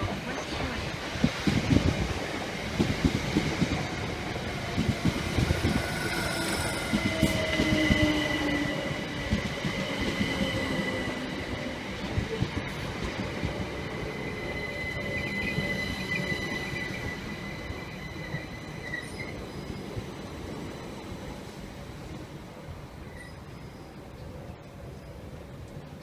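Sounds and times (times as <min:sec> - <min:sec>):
wheels and brakes squealing: 0:14.0 - 0:21.3, 0:23.0 - 0:24.0.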